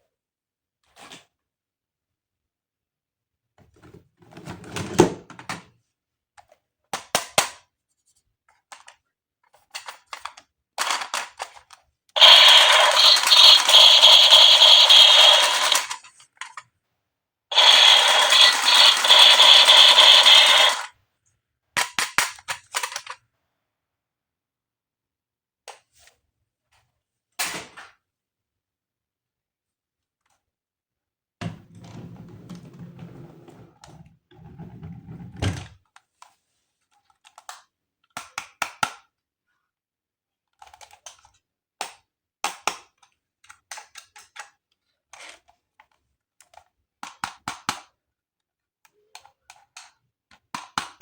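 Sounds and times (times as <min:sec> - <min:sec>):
toy gun firing: 0:12.2 - 0:16.0, 0:17.5 - 0:20.9.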